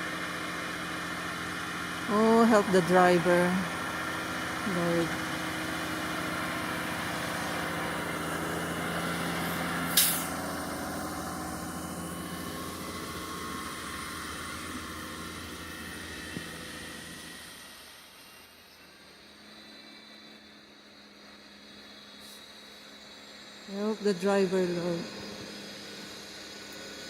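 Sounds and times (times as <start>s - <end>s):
heavy vehicle engine running: 0.0s - 27.0s
short sharp hiss: 9.9s - 10.4s, 22.2s - 22.7s.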